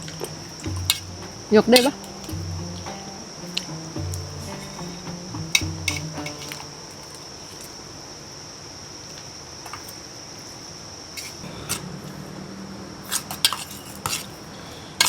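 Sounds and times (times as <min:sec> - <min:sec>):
spoons clinking against plates: 0:05.6 - 0:06.7
high-pitched whine: 0:11.4 - 0:15.0.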